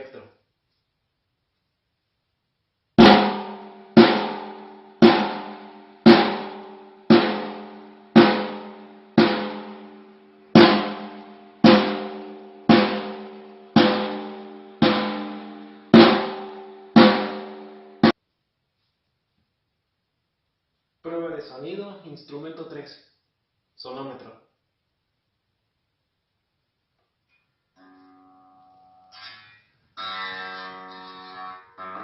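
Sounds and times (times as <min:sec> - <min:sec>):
drum hits with low tone: 0:03.0 - 0:18.2.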